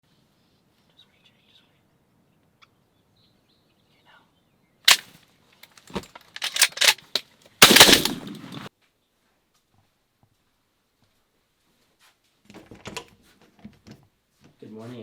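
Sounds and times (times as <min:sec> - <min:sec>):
loud cracks and knocks: 0:05.6 - 0:08.7
shotgun blast: 0:07.6 - 0:08.7.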